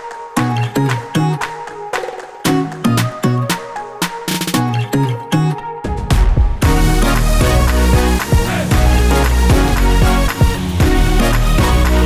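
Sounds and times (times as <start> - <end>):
electronic music with beat: 0.0 - 12.0.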